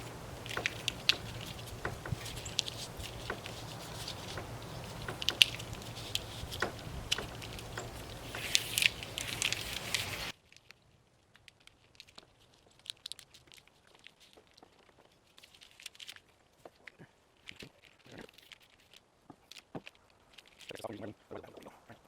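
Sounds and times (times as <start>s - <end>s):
low steady hum: 0.0s - 10.3s
handling clicks and scrapes: 0.0s - 10.8s.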